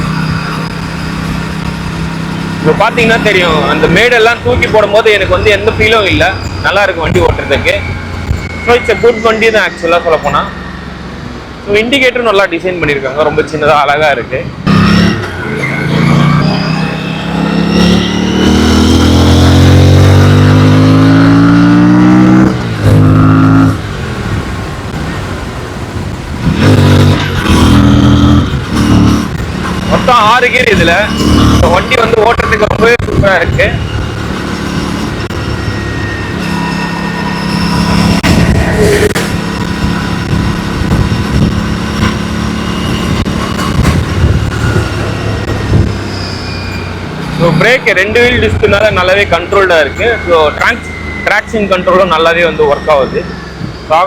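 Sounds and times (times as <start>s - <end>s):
motorcycle engine accelerating: 14.6s - 24.1s, 26.4s - 46.1s
wind rush: 37.8s - 46.2s.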